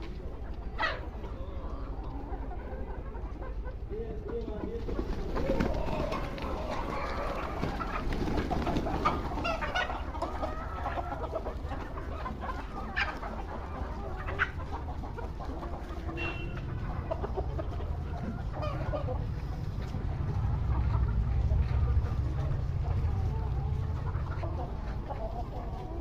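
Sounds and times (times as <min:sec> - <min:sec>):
chickens clucking: 0:00.0 - 0:26.0
steady low rumble: 0:16.7 - 0:25.8.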